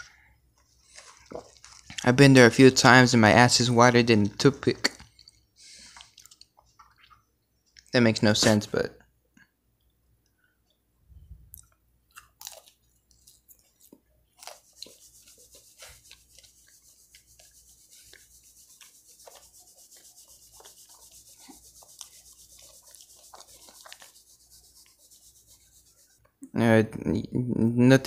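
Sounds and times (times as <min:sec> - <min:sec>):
soft rubbing hiss: 0:14.4 - 0:26.4.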